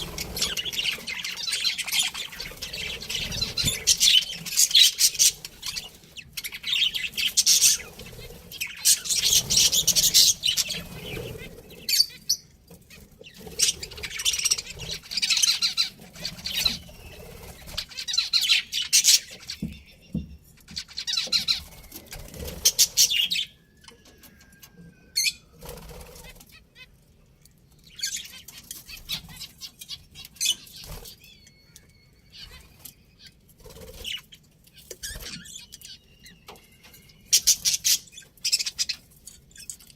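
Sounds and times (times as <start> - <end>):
budgerigars chattering: 0.0 - 19.6.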